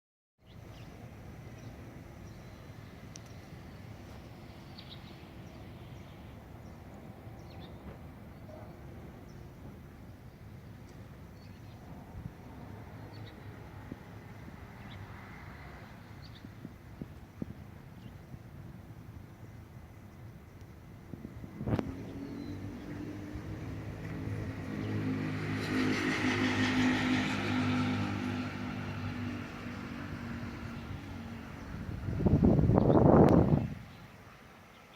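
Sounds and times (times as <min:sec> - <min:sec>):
vehicle engine passing: 0:21.4 - 0:32.6.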